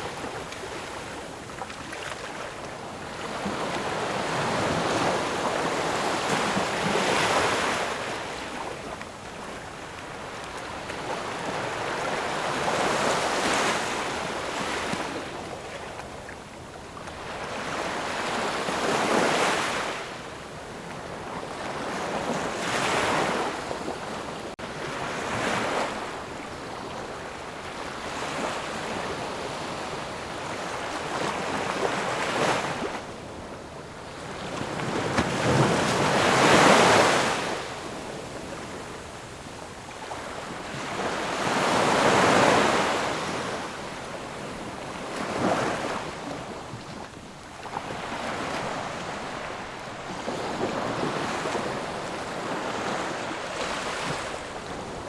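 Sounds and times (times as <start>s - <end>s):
ocean waves breaking: 27.8s - 39.1s, 40.1s - 55.0s.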